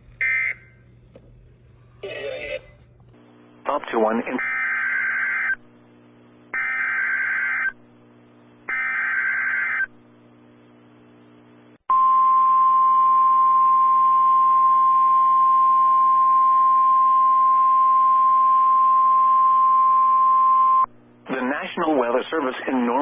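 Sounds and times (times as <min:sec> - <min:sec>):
steady warning alarm tone: 0:00.2 - 0:00.8.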